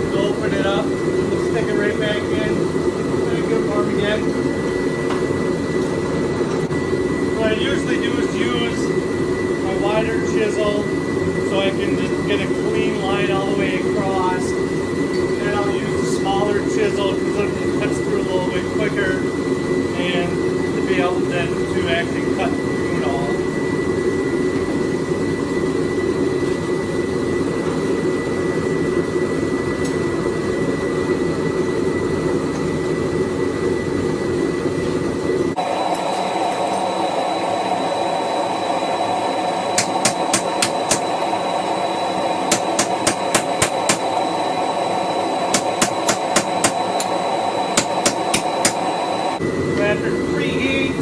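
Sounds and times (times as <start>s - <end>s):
forge drone: 0.0s - 51.0s
hammer striking chisel on hot metal: 39.8s - 41.2s, 42.5s - 44.2s, 45.5s - 49.0s.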